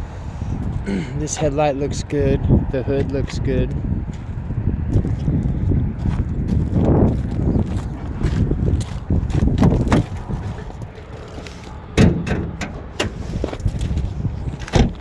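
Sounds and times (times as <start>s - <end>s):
footsteps: 4.1s - 15.0s
sharp knocks and clicks: 12.0s - 13.7s.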